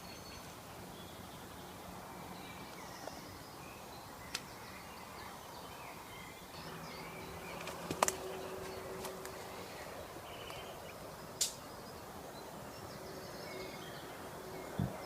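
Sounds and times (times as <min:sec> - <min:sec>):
bird chirps: 0:00.0 - 0:15.0
sharp clicks: 0:11.4 - 0:11.6.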